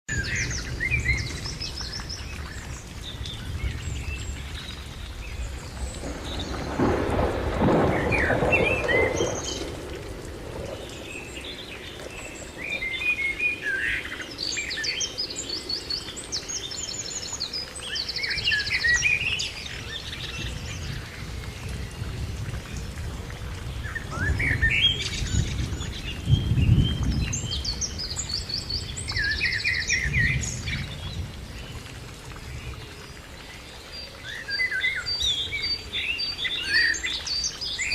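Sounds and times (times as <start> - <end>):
birds chirping and trilling: 0.1 - 23.0, 23.6 - 37.9
steady rain-like hiss: 0.1 - 37.9
low rolling rumbles: 0.2 - 13.6, 19.6 - 33.5.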